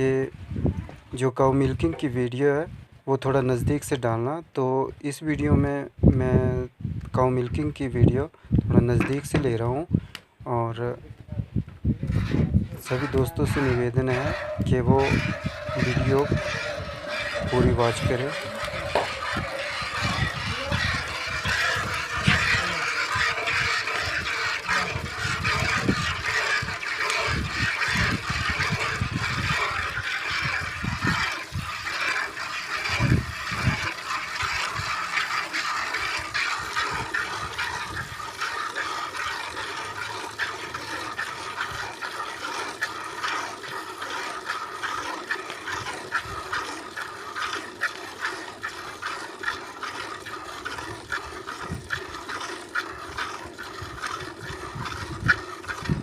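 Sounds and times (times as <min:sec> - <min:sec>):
milk squirting into a pail: 0:12.1 - 0:56.0.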